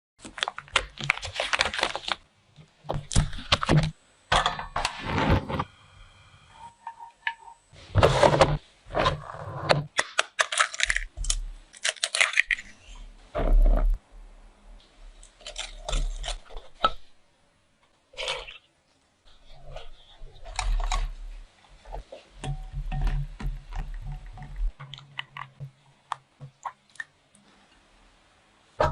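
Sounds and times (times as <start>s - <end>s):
utensils and dishes clinking: 21.9s - 25.5s.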